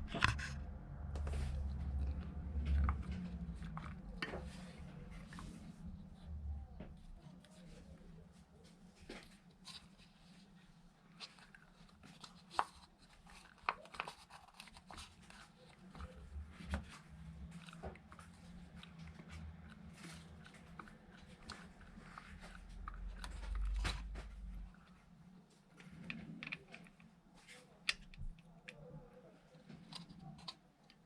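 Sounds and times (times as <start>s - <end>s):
low rumble: 0.0s - 7.0s
clicks and knocks of handling: 0.0s - 8.2s, 11.0s - 31.0s.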